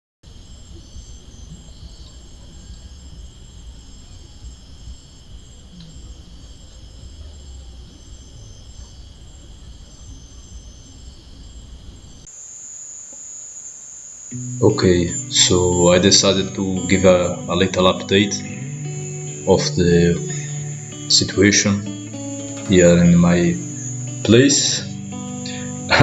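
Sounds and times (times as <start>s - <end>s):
insects trilling: 0.3s - 26.0s
high steady tone: 12.4s - 26.0s.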